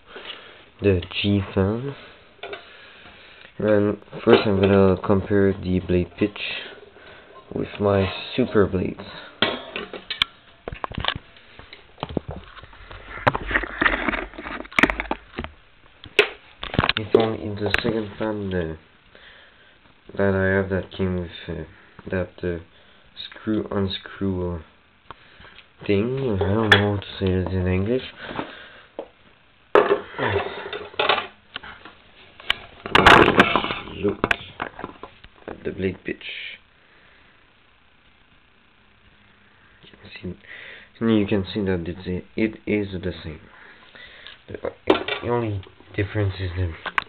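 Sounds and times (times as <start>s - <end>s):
plastic parts clicking and knocking: 13.3s - 17.0s.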